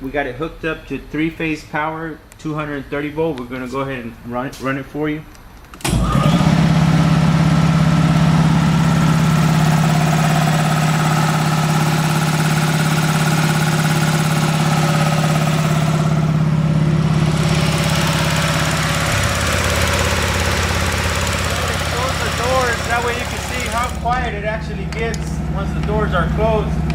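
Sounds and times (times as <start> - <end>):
electric air compressor humming: 5.8 - 26.9.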